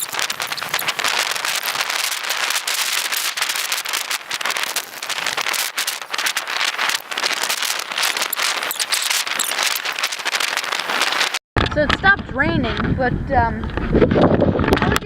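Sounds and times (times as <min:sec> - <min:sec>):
heavy rain drops striking: 0:00.0 - 0:11.4.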